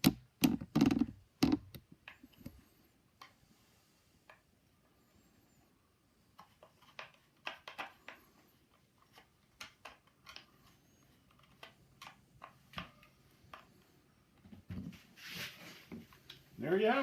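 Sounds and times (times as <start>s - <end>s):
metal parts clicking and tapping: 6.4s - 13.8s.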